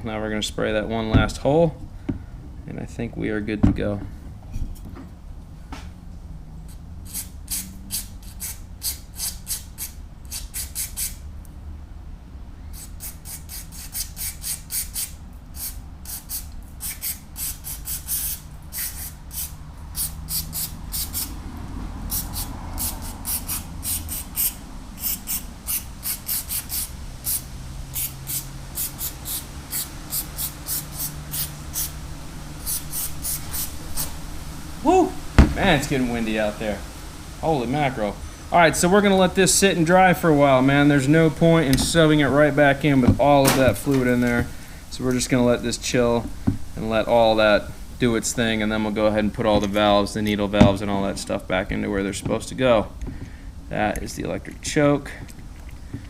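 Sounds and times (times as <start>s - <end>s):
aerosol spray hissing bursts: 7.0s - 11.2s, 12.7s - 21.4s, 22.1s - 37.2s.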